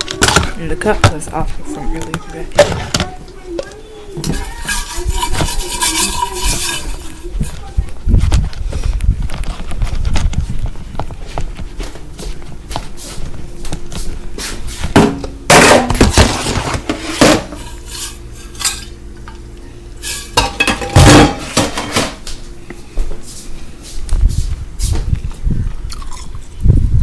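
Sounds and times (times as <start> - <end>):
plate and cups clinking: 4.2 - 7.1.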